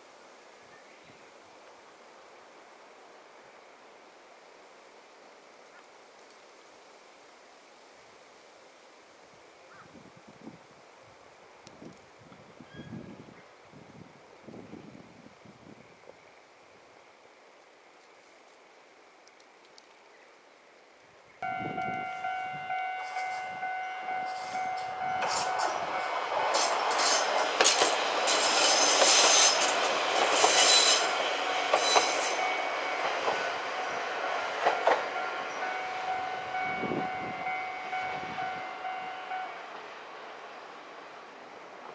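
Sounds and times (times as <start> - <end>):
train wheels squealing: 12.6 - 13.1, 21.5 - 33.6
level crossing bell ringing: 21.4 - 26.1, 34.8 - 39.5
train wheels clacking: 21.7 - 40.3.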